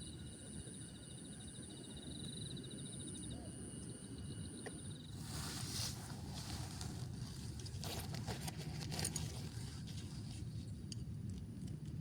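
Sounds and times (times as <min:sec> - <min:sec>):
insect high continuous buzz: 0:00.0 - 0:12.0
rustling hiss: 0:05.1 - 0:08.2.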